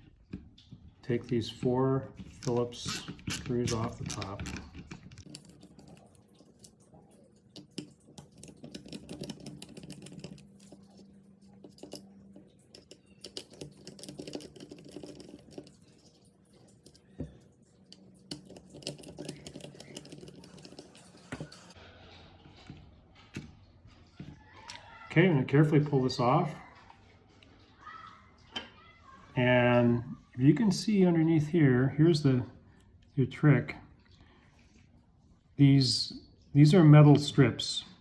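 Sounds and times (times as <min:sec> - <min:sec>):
screwdriver clicking on screws: 0:02.3 - 0:05.3.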